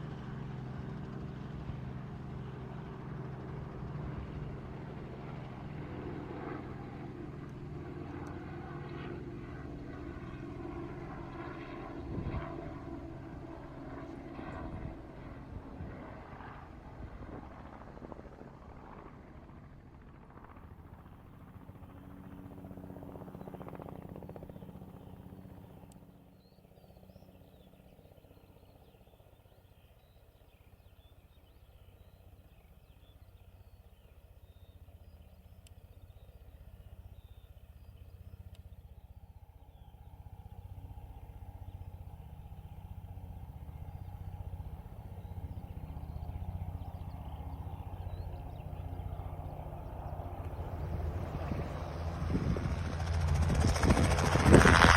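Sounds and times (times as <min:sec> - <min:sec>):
helicopter rotor hum: 0:00.0 - 0:54.9
small birds chirping: 0:23.2 - 0:53.0.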